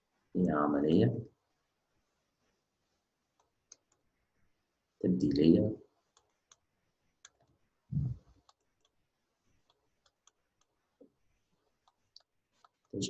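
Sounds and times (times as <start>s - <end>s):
brief low voice-like sound: 8.0s - 8.2s.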